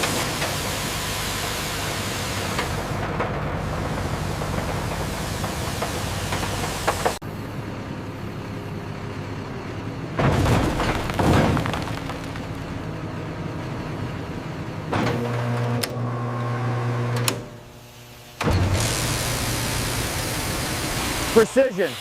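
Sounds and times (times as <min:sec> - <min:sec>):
machinery humming and whirring: 0:12.6 - 0:22.0.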